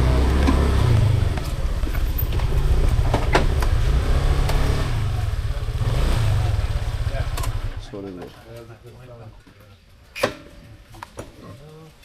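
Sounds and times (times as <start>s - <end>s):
knocks and rattles: 0.0s - 4.9s
car rumbling on rough road: 0.0s - 7.9s.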